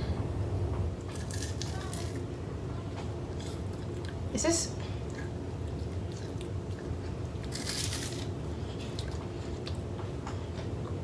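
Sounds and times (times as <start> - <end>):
person chewing wafer bar: 1.0 - 2.3, 5.1 - 11.0
crisp crunch: 1.1 - 2.2, 5.8 - 9.8.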